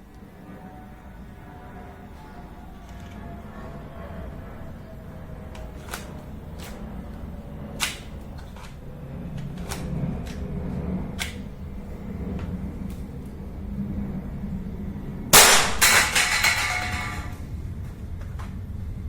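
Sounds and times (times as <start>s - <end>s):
steady low hum: 0.0s - 19.0s
toy pistol mechanism clicking: 7.8s - 8.2s.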